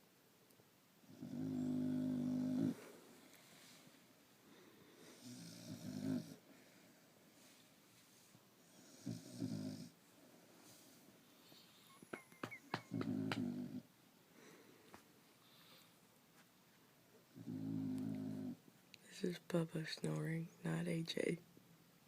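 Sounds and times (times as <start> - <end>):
person snoring: 1.1 - 2.9, 5.0 - 6.4, 8.8 - 9.9, 12.9 - 13.8, 17.4 - 18.6.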